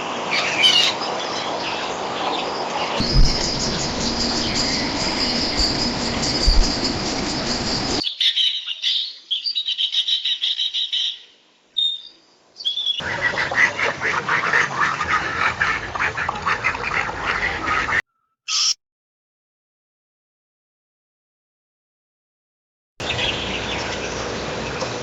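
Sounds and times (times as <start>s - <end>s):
background noise: 0.0s - 18.0s
high bird chirps: 3.0s - 10.9s, 18.5s - 18.8s
harsh rapid bird calls: 3.0s - 11.2s, 17.7s - 18.8s.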